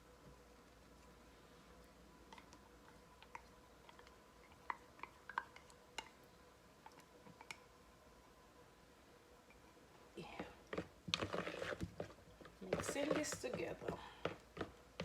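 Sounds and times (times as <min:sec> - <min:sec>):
faint steady hum: 0:00.0 - 0:15.0
utensil tapping mixing bowl: 0:10.7 - 0:15.0.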